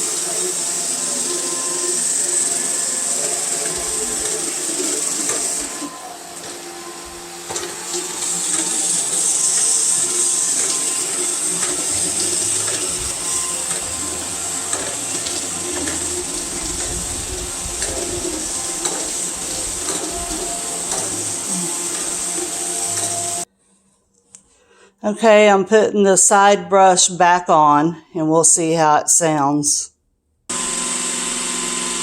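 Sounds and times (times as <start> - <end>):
robot vacuum motor whirring: 0.0 - 23.5, 30.5 - 32.0.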